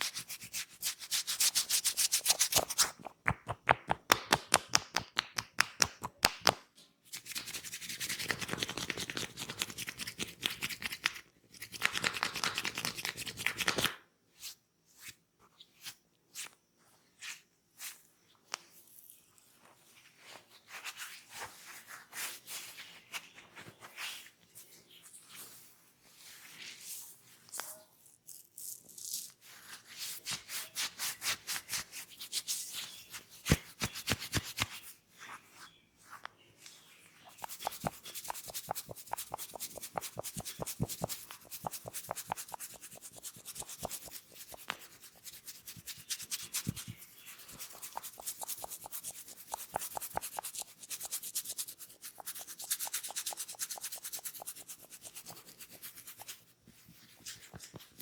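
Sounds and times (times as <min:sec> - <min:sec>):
hands rubbing hair and scalp: 0:00.0 - 0:14.0, 0:37.2 - 0:57.9.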